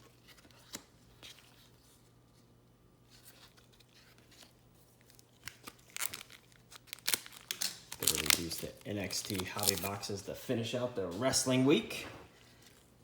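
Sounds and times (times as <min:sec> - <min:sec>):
wrapper crinkling and tearing: 0:03.6 - 0:10.2.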